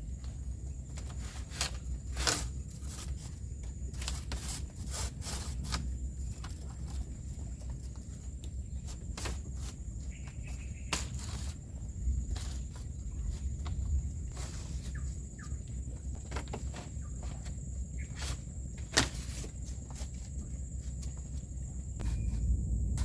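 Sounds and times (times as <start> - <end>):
low steady rumble: 11.6 - 23.0.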